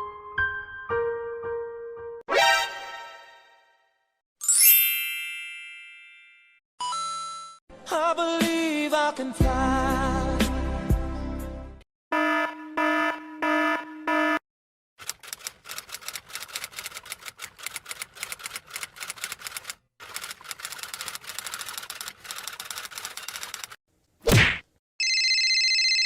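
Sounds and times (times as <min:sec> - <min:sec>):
keyboard typing: 0:15.0 - 0:23.8.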